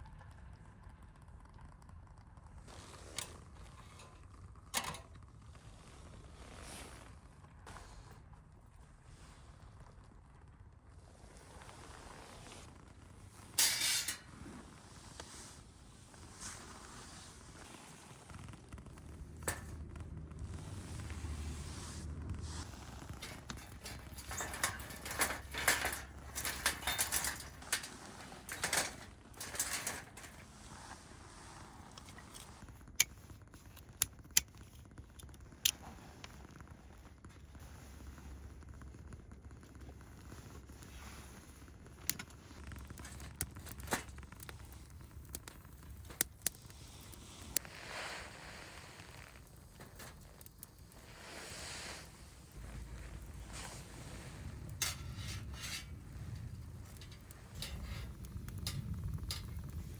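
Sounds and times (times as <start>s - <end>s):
wood crackling and snapping: 22.6s - 30.6s, 31.8s - 37.4s, 41.8s - 59.9s.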